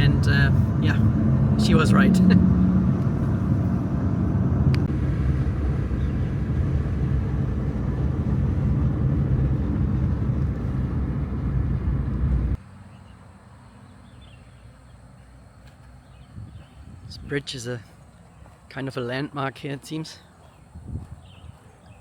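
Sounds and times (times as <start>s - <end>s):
car interior road rumble: 0.0s - 12.6s.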